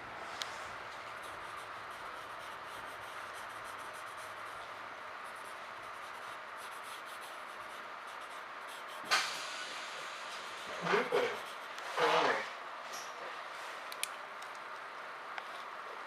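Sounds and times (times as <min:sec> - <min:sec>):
pencil scratching on paper: 0:01.0 - 0:09.3, 0:10.0 - 0:12.4.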